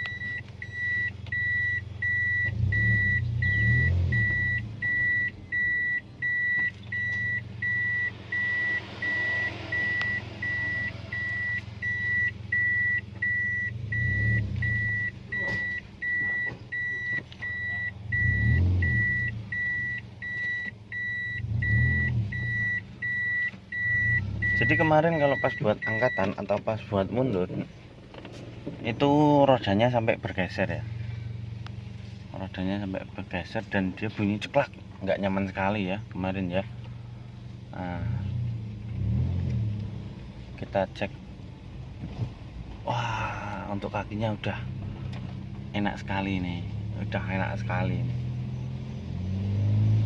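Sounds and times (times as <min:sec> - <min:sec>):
car warning beeper: 0:00.0 - 0:26.9
car engine hum: 0:00.0 - 0:50.0.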